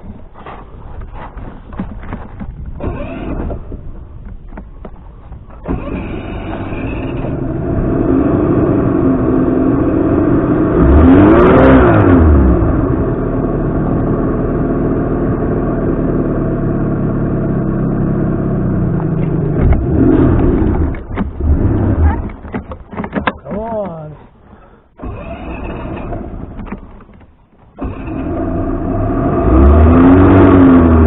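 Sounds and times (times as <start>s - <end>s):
outboard motor revving: 2.7s - 3.9s, 5.6s - 23.4s, 24.9s - 27.2s, 27.8s - 31.0s.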